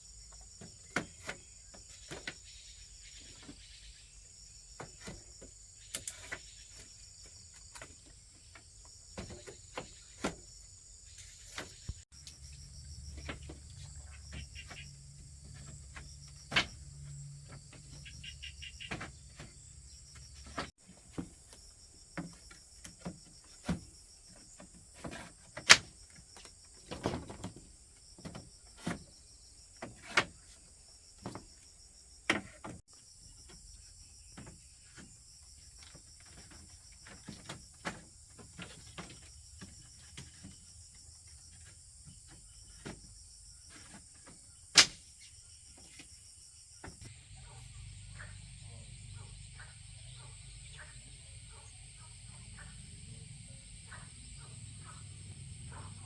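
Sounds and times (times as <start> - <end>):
crickets chirring: 0.0 - 56.0.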